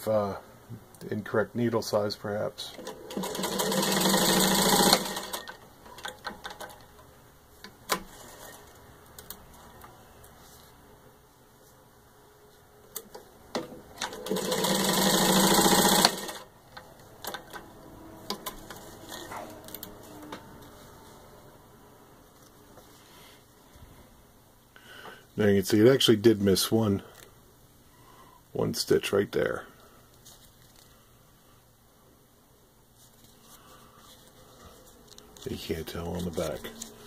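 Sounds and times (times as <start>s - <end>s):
sewing machine stitching: 2.8s - 6.8s, 14.0s - 16.5s.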